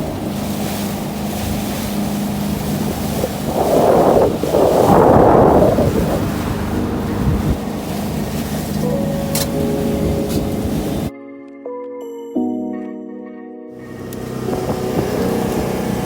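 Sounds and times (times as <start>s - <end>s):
sea water rushing: 0.0s - 11.1s, 13.8s - 16.0s
steady low hum: 0.0s - 11.1s
wind rushing: 0.0s - 11.1s, 13.8s - 16.0s.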